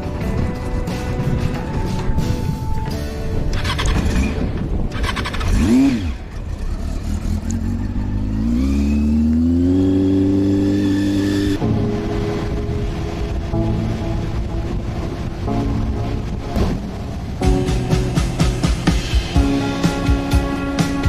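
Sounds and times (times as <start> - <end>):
motorcycle engine revving: 3.5 - 12.1.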